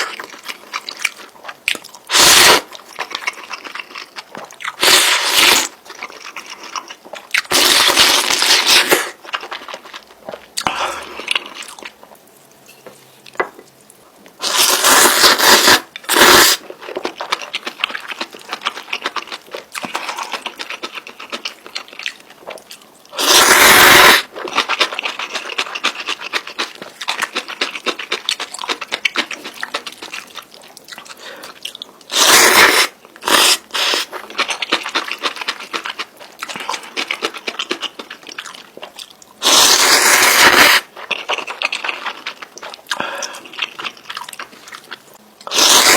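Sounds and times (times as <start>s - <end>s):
noodle slurping: 2.1s - 2.7s, 4.7s - 5.8s, 14.4s - 16.6s, 23.1s - 25.2s, 32.1s - 34.1s, 39.4s - 40.9s, 45.5s - 45.9s
wet chewing: 13.2s - 45.9s.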